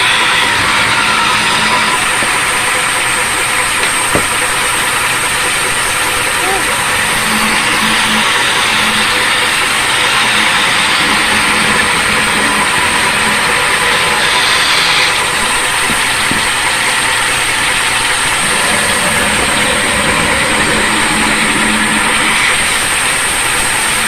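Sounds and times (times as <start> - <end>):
machinery whining and humming: 0.0 - 24.0.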